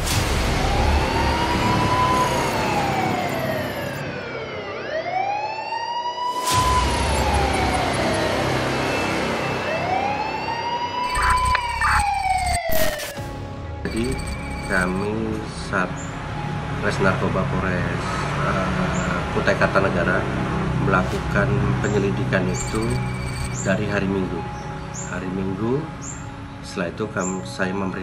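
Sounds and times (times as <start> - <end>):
siren wailing: 0.3 - 15.1, 22.4 - 23.8.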